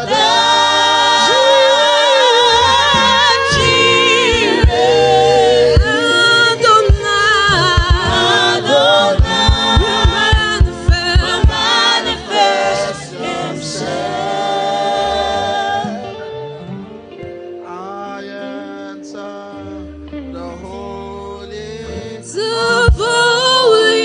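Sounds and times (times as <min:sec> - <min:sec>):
gospel singers with band: 0:00.0 - 0:24.0
kick drum beat: 0:04.3 - 0:05.0, 0:05.7 - 0:06.1, 0:06.8 - 0:08.5, 0:09.1 - 0:11.8, 0:22.9 - 0:23.2.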